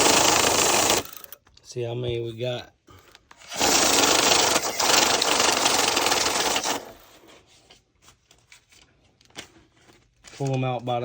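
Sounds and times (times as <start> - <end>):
bill-counting machine whirring: 0.0 - 1.4, 3.5 - 7.1.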